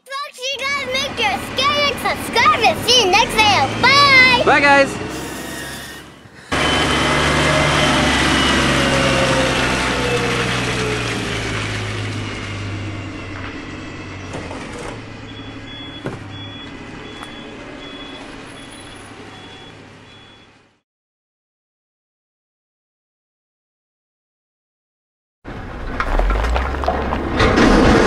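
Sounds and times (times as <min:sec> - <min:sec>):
heavy truck engine running: 0:00.1 - 0:20.8, 0:25.5 - 0:28.0
reversing beeper: 0:05.1 - 0:14.6, 0:15.2 - 0:20.5.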